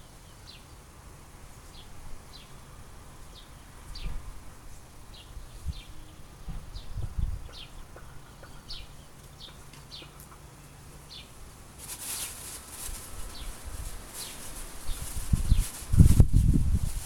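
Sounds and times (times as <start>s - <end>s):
rustling hiss: 0.0s - 8.2s, 8.8s - 17.0s
small bird chirping: 5.1s - 16.1s.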